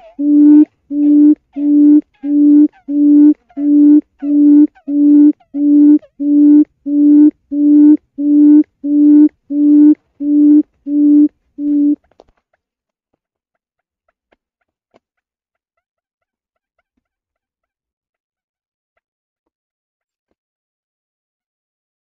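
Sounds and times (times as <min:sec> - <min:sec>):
quail hooting: 0:00.0 - 0:12.0.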